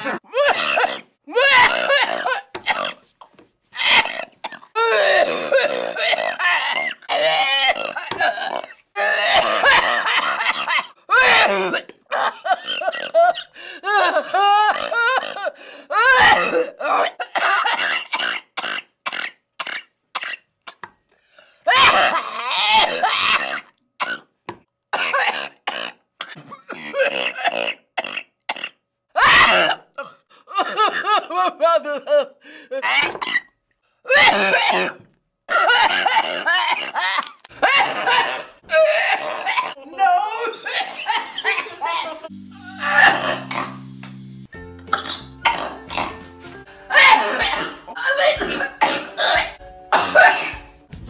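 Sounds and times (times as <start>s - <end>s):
woman making burp-like vocal noises: 4.4s - 6.4s, 42.5s - 43.8s, 44.9s - 46.3s, 47.0s - 50.7s
woman coughing: 16.2s - 18.4s, 26.2s - 27.8s, 34.1s - 36.2s, 40.4s - 43.8s, 44.9s - 46.1s, 46.9s - 50.7s
long throaty voiced sound: 42.3s - 50.7s.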